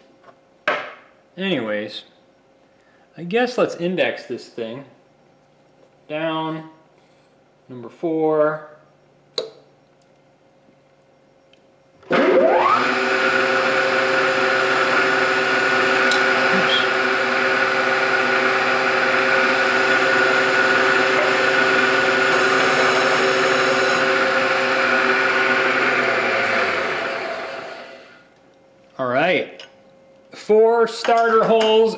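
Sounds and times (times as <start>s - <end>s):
milling machine spindle whine: 12.1s - 28.2s.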